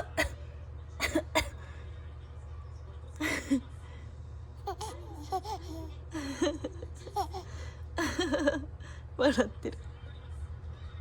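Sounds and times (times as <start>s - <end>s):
baby giggling: 4.6s - 6.1s, 7.0s - 8.2s.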